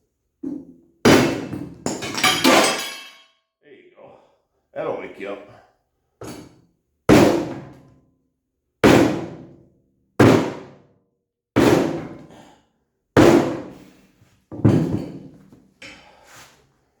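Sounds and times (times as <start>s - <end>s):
sledgehammer blows on wood block: 8.8s - 9.5s, 10.2s - 10.7s, 11.6s - 12.2s, 13.2s - 13.9s.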